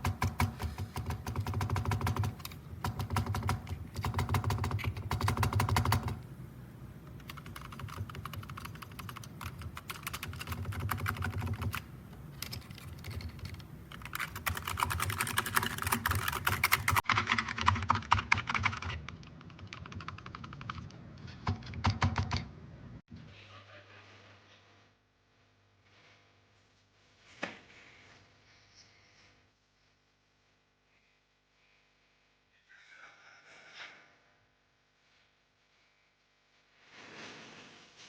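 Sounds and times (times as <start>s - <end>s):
clicky keyboard typing: 0.0s - 6.3s, 7.0s - 22.5s.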